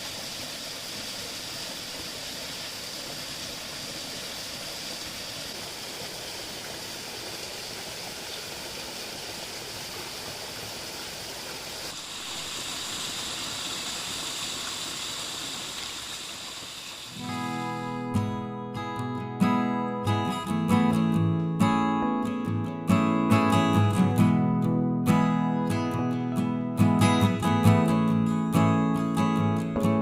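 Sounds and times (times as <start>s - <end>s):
stream water rushing: 0.0s - 18.5s
acoustic guitar music: 17.1s - 30.0s.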